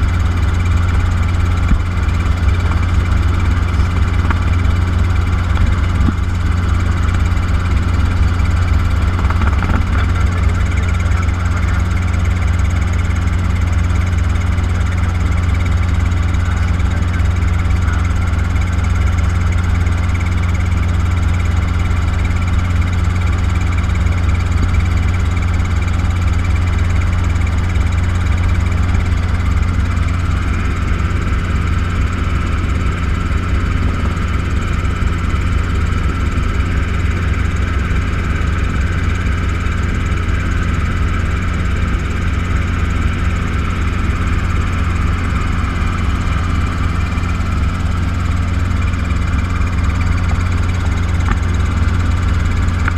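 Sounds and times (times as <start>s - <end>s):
helicopter engine and rotors droning: 0.0s - 52.9s.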